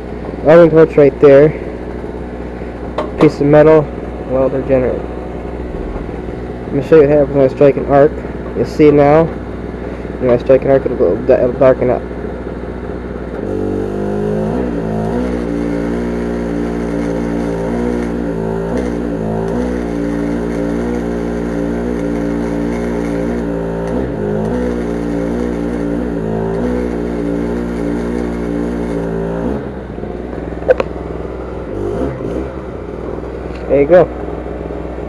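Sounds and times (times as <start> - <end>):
welder generator engine running: 0.0 - 35.0
welding arc hissing and crackling: 13.5 - 29.4
sharp click: 30.6 - 30.9.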